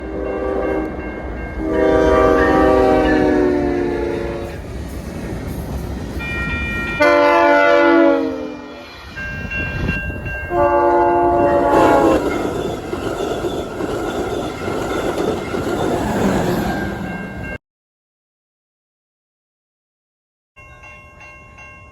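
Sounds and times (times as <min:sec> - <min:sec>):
train horn blasts: 0:00.0 - 0:04.6, 0:07.0 - 0:08.8, 0:10.5 - 0:12.3
train rushing past: 0:00.0 - 0:17.6.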